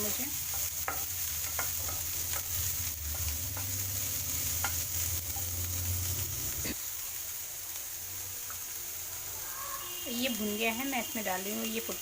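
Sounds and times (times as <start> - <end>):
vegetables sizzling in oil: 0.0 - 12.0
spatula clicking against pan: 0.5 - 3.8, 4.6 - 4.8.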